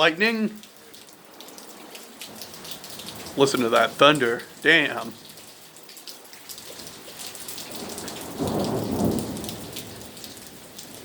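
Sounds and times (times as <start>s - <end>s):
rain and hail pattering: 0.0s - 11.0s
thunder rumbling: 7.7s - 11.0s.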